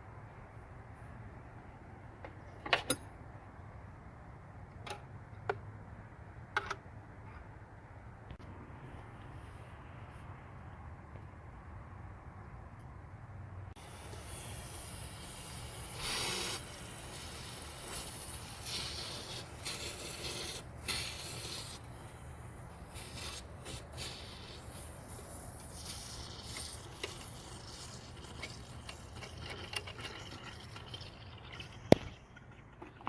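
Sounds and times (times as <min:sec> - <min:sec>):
small clicks and knocks: 0:06.5 - 0:07.5.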